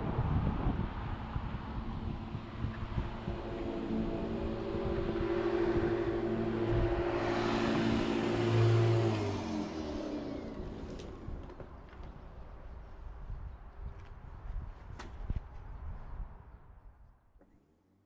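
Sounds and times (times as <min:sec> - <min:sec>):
motor vehicle passing by: 0:00.0 - 0:12.2.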